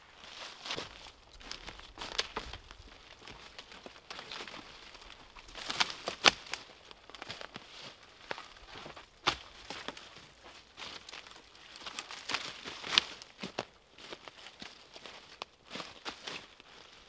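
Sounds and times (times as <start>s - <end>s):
rustling and crinkling: 0.0s - 17.0s.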